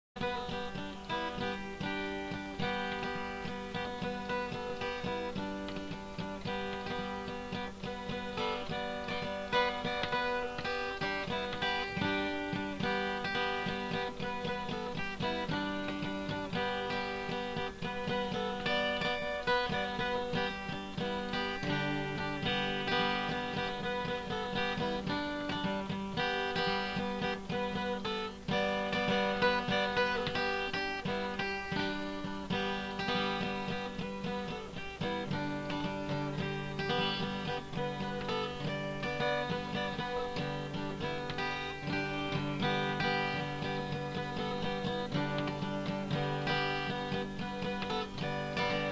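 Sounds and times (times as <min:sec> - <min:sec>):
plucked string instrument music: 0:00.2 - 0:48.9.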